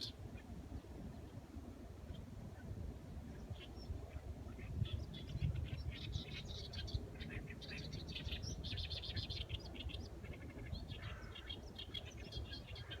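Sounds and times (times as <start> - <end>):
small birds chirping: 3.3 - 13.0.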